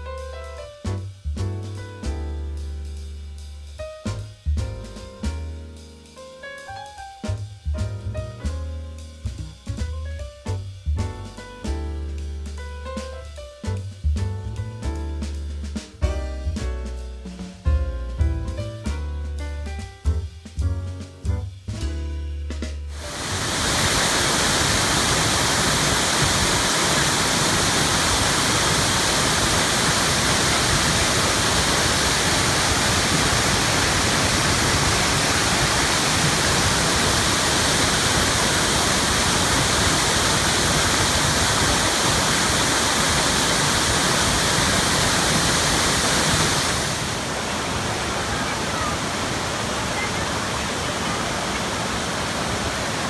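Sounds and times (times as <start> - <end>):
waterfall rushing: 22.9 - 53.0.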